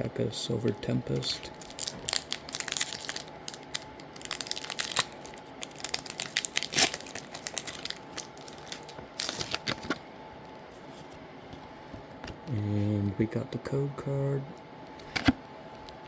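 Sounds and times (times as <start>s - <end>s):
foil wrapper tearing and crinkling: 1.2s - 9.9s.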